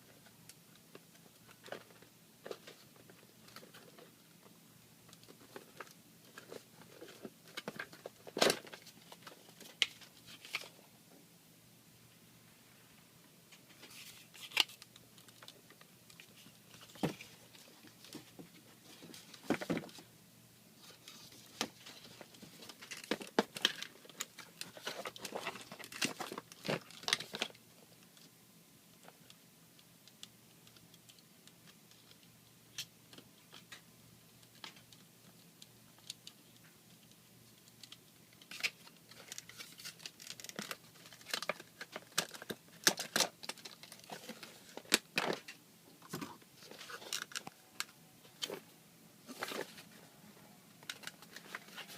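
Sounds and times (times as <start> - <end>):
plastic packaging crinkling: 21.1 - 27.6, 37.8 - 48.6.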